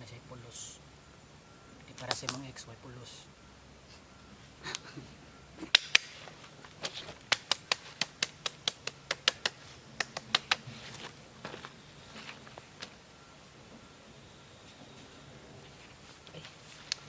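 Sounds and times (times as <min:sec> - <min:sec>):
rapid sharp clicks: 0:07.3 - 0:10.6.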